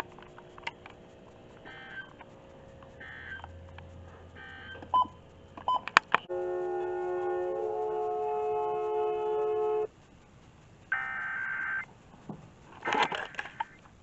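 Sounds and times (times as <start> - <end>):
buzzy digital data squawks: 0.0 - 5.5, 6.2 - 11.9
held alert tones: 1.6 - 2.2, 3.0 - 3.6, 4.4 - 6.3
short beeps: 4.4 - 6.3.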